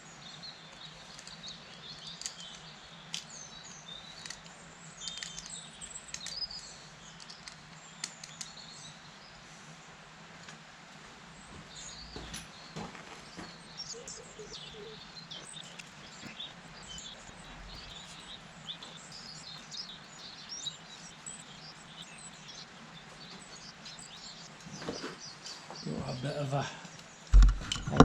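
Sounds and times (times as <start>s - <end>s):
faint steady hum: 0.0s - 28.0s
small birds chirping: 0.0s - 28.0s
light clicks: 4.1s - 8.7s.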